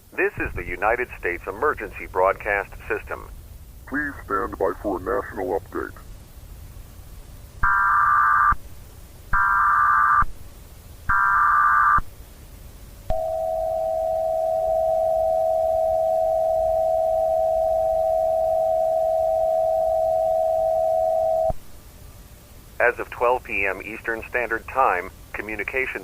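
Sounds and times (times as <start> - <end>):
steady attention tone: 0.1 - 6.0, 13.1 - 21.6
digital data tone bursts: 11.1 - 12.0.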